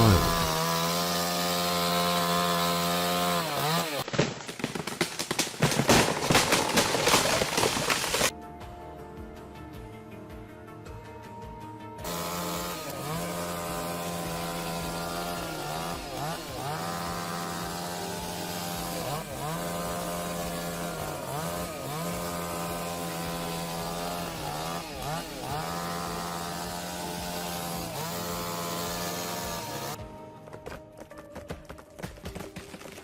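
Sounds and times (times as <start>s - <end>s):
chainsaw running: 0.0s - 8.3s, 12.0s - 30.1s.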